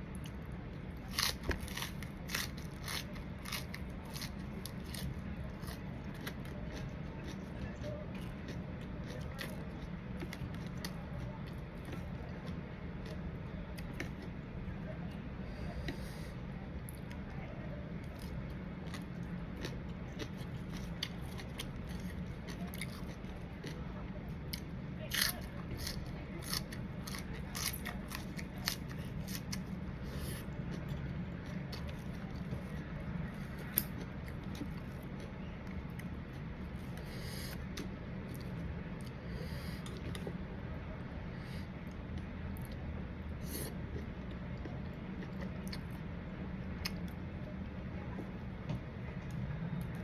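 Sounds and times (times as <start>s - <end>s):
crunchy chewing: 0.0s - 14.8s, 18.0s - 40.4s
steady low hum: 0.0s - 50.0s.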